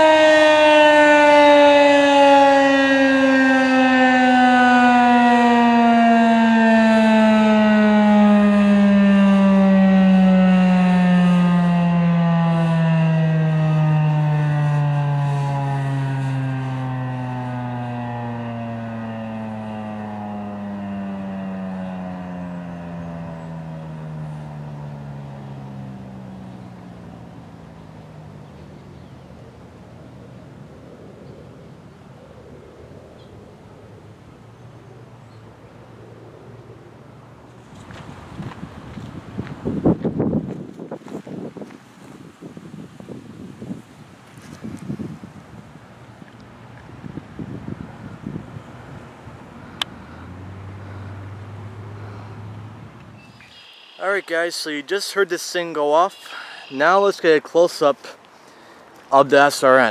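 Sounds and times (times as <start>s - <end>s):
warning siren winding down: 0.0s - 31.0s, 44.4s - 57.4s.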